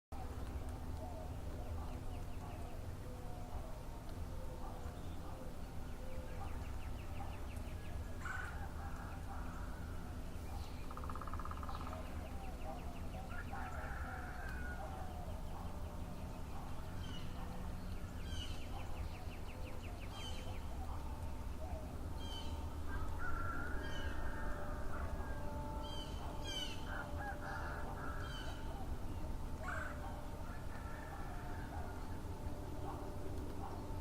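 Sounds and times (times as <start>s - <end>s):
steady low hum: 0.2s - 34.0s
fowl calling: 8.2s - 10.2s, 10.9s - 19.0s, 20.2s - 34.0s
small birds chirping: 15.2s - 23.3s.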